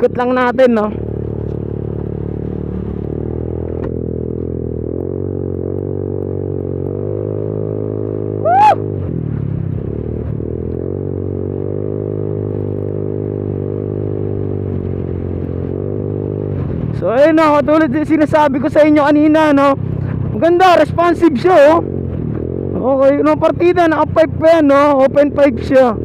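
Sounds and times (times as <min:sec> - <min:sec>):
motorcycle engine running: 0:00.0 - 0:26.0
loud rising whoop: 0:08.4 - 0:09.0.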